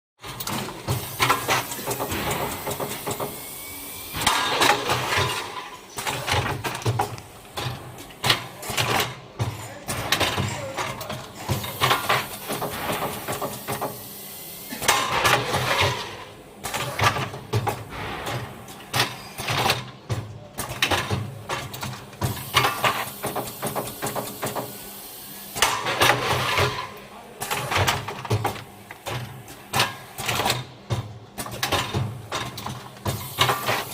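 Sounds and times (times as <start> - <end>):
packing machine clicking and knocking: 0.2 - 3.5, 4.1 - 14.1, 14.8 - 24.8, 25.6 - 33.9.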